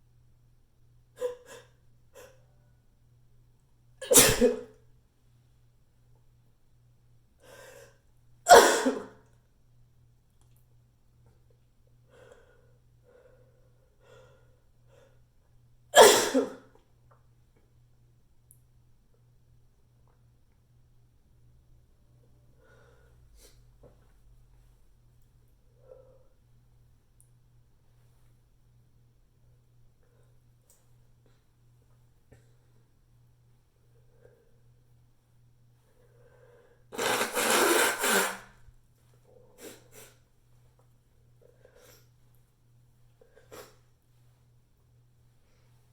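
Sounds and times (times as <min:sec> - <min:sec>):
person sneezing: 0:04.0 - 0:04.8, 0:08.5 - 0:09.2, 0:16.0 - 0:16.7, 0:37.0 - 0:38.5
short breath bursts: 0:36.2 - 0:38.5.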